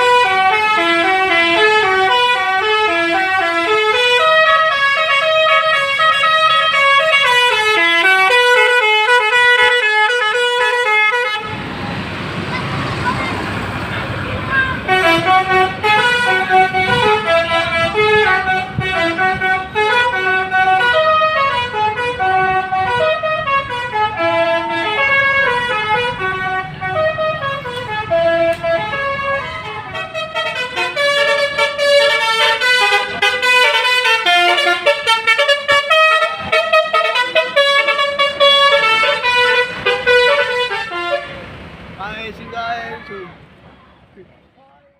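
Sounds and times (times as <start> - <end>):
multi-tone bus horn melody: 0.0 - 11.7, 14.4 - 41.7.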